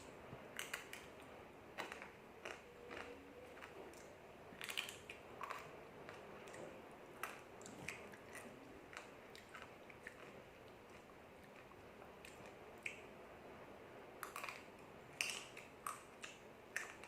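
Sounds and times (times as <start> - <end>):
quiet chewing: 0.4 - 13.1, 14.2 - 17.0
crunching crispy fried noodles: 1.8 - 6.6.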